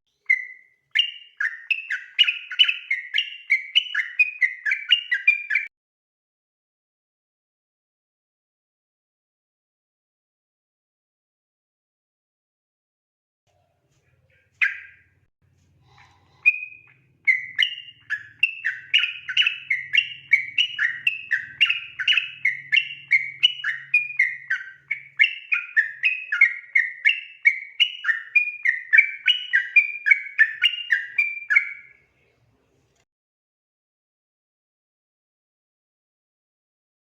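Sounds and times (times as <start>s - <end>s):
bulbul singing rapid song: 0.1s - 5.7s, 14.1s - 15.1s, 15.8s - 32.0s.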